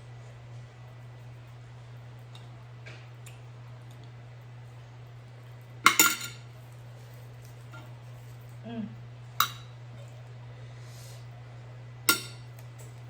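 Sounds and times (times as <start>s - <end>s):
steady low hum: 0.0s - 13.0s
utensil clinking against bowl: 5.9s - 6.4s, 9.4s - 9.8s, 12.1s - 13.0s.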